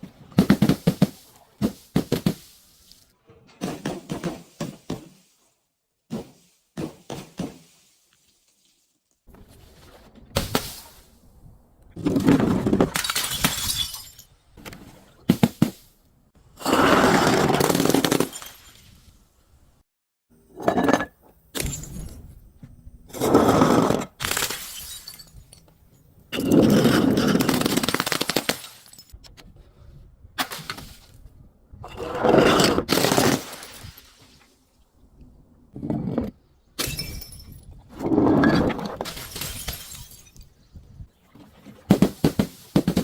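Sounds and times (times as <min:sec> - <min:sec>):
glass bottles shattering: 0:12.9 - 0:14.4, 0:17.5 - 0:19.1, 0:20.5 - 0:22.3, 0:24.2 - 0:25.7, 0:26.3 - 0:29.2, 0:32.6 - 0:34.2, 0:36.8 - 0:37.8, 0:39.0 - 0:40.6.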